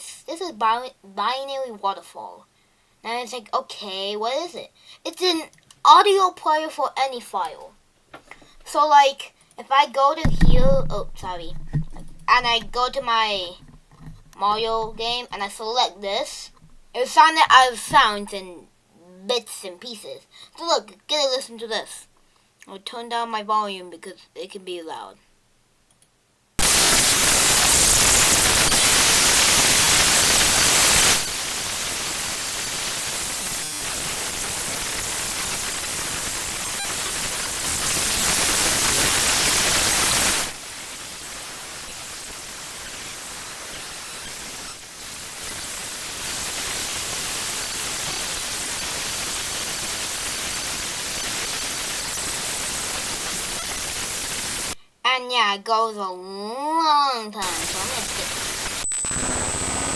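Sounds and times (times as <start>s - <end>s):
harsh static noise: 10.2s - 18.6s, 26.6s - 54.8s, 57.4s - 59.9s.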